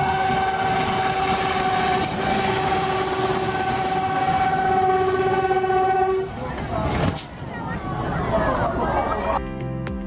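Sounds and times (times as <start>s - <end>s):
locomotive horn blast: 0.0s - 6.4s
moving train rumble: 0.0s - 9.4s.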